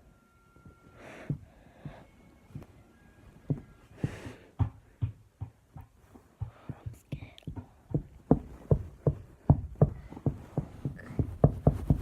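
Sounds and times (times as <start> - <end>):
person breathing close: 0.9 - 2.3, 3.9 - 4.6
soft thumps and knocks: 1.2 - 12.0.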